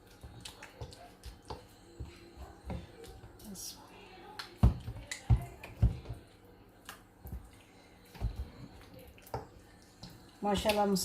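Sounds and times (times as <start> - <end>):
wet slaps and squelches: 4.4 - 5.3.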